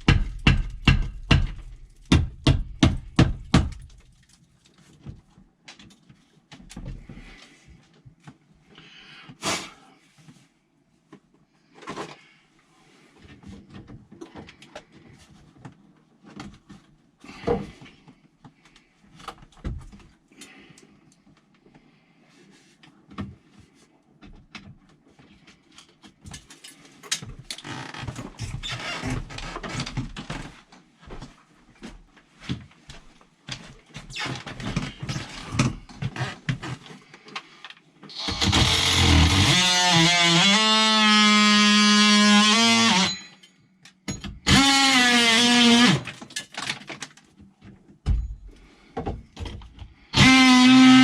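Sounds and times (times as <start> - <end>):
rustling of wires and tape: 3.8 - 8.8, 10.1 - 43.1, 44.6 - 50.9
clicks and knocks of handled tools: 25.6 - 27.6.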